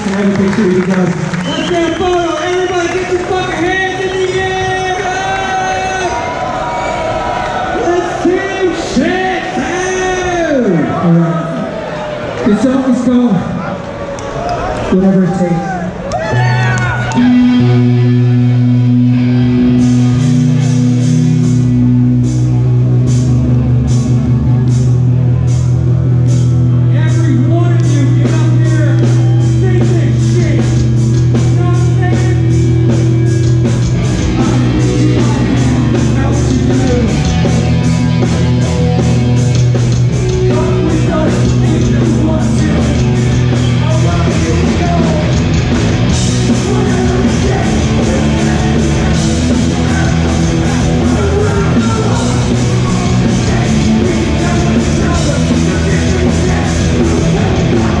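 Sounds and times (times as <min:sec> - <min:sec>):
bass guitar: 0:15.9 - 0:58.0
distorted electric guitars: 0:16.2 - 0:58.0
fast drumming: 0:27.1 - 0:58.0.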